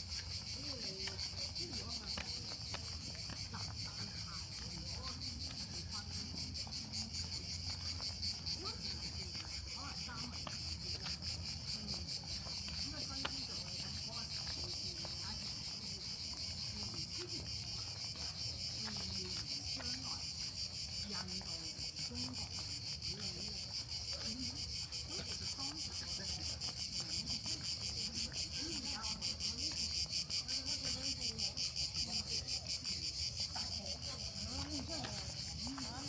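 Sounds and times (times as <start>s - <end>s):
cicadas chorus pulsing: 0.0s - 36.0s.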